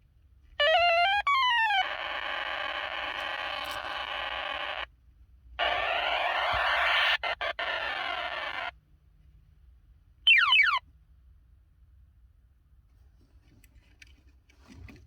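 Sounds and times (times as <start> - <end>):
electronic warbling tone: 10.3 - 10.8.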